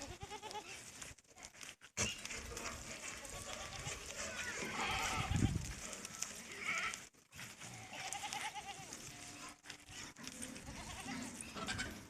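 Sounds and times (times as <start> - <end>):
goats bleating: 0.0 - 0.9, 3.2 - 9.5, 10.3 - 12.0.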